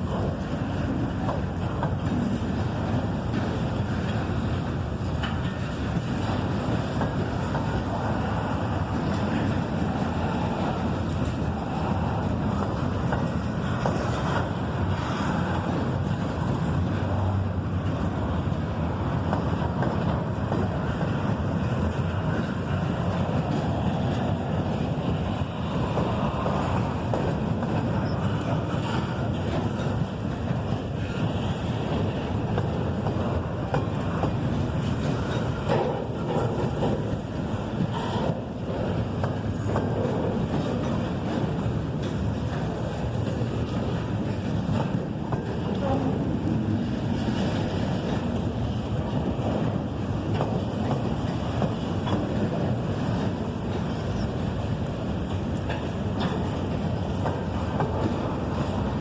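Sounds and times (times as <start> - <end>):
freight train rumbling past: 0.0 - 59.0
wind buffeting microphone: 0.0 - 59.0.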